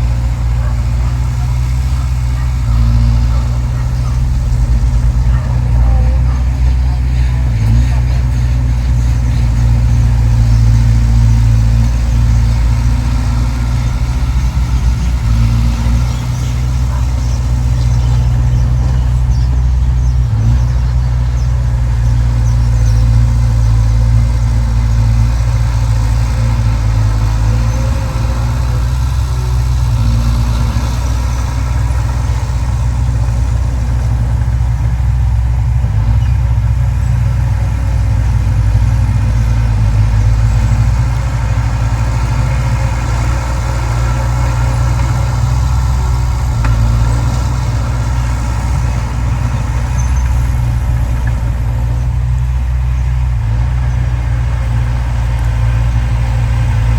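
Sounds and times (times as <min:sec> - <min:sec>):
heavy machine engine droning: 0:00.0 - 0:56.9.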